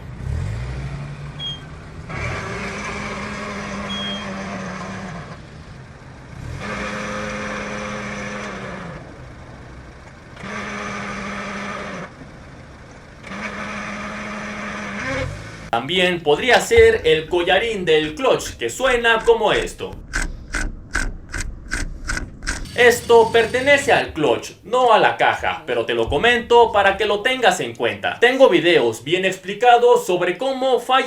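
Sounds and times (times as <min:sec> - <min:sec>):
car engine idling: 0:00.0 - 0:29.6
rough hissing bearing noise: 0:19.0 - 0:24.3.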